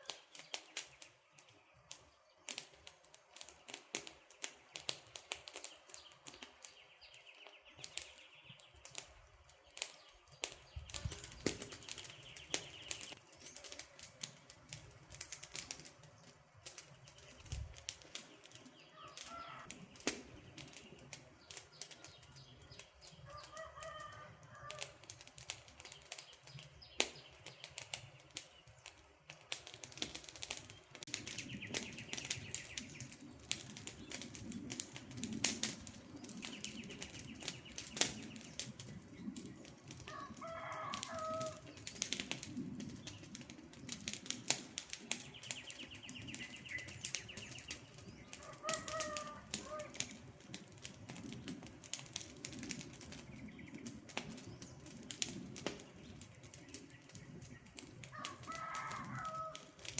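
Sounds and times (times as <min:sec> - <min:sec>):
campfire crackling and popping: 0:00.0 - 0:59.9
low rush of flame: 0:10.4 - 0:59.9
bird calling: 0:18.8 - 0:20.7, 0:45.3 - 0:50.0.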